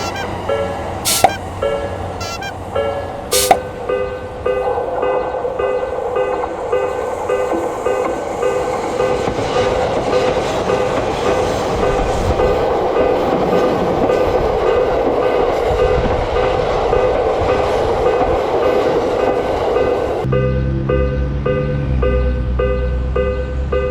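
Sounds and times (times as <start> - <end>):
electric train wheels clattering: 0.0 - 23.9
railroad crossing warning bell: 0.0 - 23.9.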